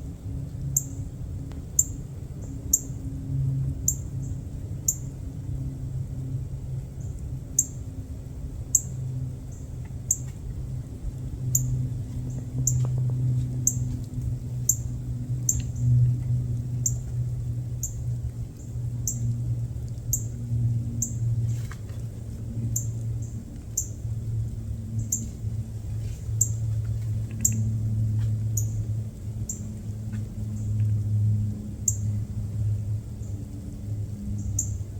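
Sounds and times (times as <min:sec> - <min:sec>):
low rumble: 0:00.0 - 0:34.9
small bird chirping: 0:07.0 - 0:07.8, 0:08.7 - 0:10.3, 0:11.5 - 0:12.8, 0:13.6 - 0:13.9, 0:25.0 - 0:25.3, 0:31.9 - 0:32.1, 0:34.4 - 0:34.8.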